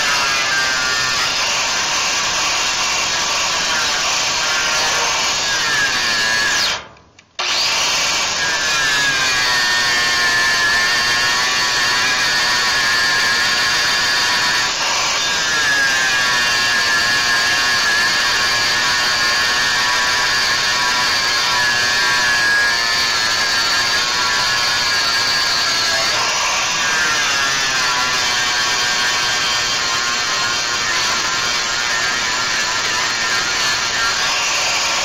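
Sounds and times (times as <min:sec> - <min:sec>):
power tool whining on steel: 0:00.0 - 0:35.0.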